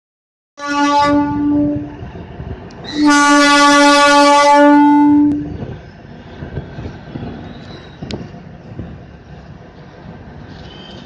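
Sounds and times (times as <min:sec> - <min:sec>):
train horn blast: 0:00.6 - 0:01.9, 0:02.9 - 0:05.5
train running rumble: 0:00.6 - 0:11.0.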